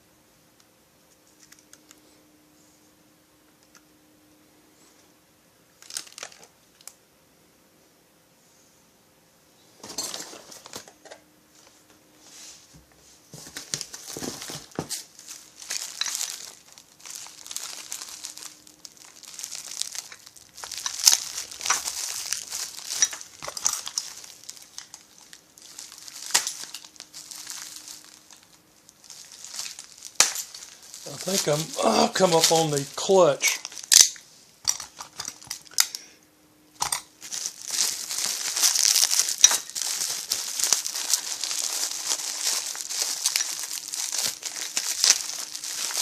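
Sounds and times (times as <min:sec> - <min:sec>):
plastic packaging crinkling: 0:05.8 - 0:07.0, 0:09.8 - 0:11.0, 0:13.3 - 0:36.0, 0:36.8 - 0:46.0.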